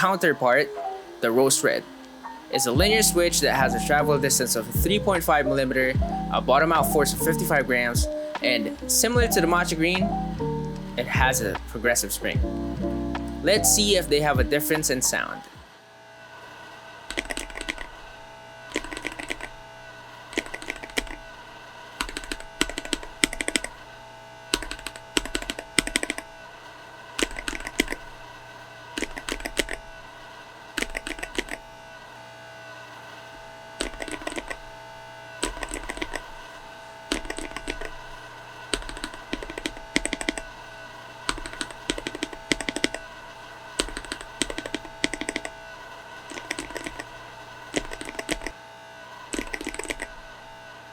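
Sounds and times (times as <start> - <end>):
mechanical keyboard typing: 17.1 - 18.0, 18.7 - 19.6, 20.3 - 21.2, 22.0 - 23.8, 24.5 - 26.3, 27.2 - 28.1, 29.0 - 29.8, 30.8 - 31.6, 33.8 - 34.6, 35.4 - 36.3, 37.1 - 38.0, 38.7 - 40.6, 41.3 - 43.1, 43.8 - 45.6, 46.3 - 48.6, 49.3 - 50.2.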